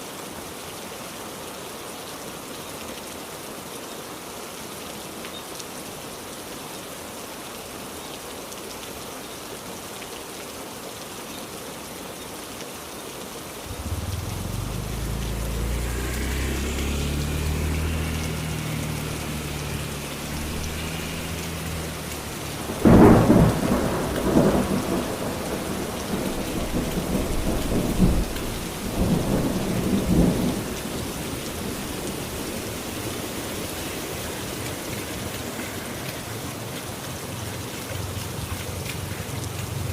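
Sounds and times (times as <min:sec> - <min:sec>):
heavy rain falling: 0:00.0 - 0:39.9
thunder rumbling: 0:13.6 - 0:32.9.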